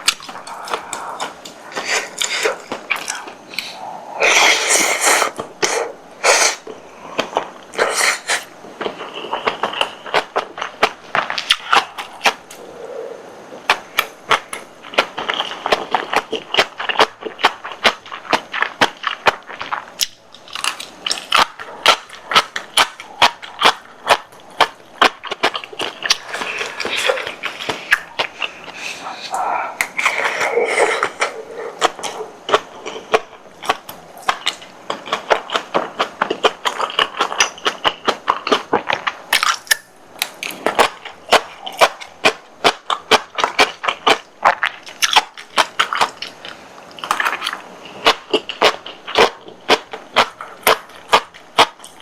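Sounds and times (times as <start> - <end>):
chewing and biting: 0.0 - 5.8, 6.6 - 12.7, 13.7 - 52.0
wet mouth clicks: 0.0 - 12.6.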